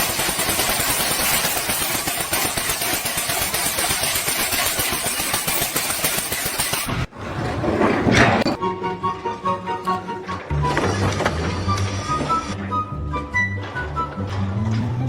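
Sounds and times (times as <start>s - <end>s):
loud machine noise: 0.0s - 7.1s
music: 8.5s - 15.0s.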